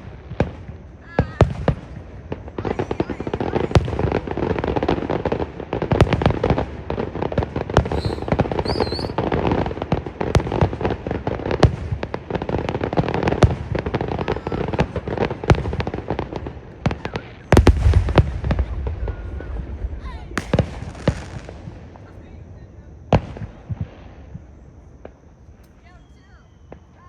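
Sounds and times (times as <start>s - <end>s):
fireworks bangs: 0.0s - 27.0s
fireworks crackling: 0.0s - 27.0s
wavering whistle: 7.9s - 9.2s.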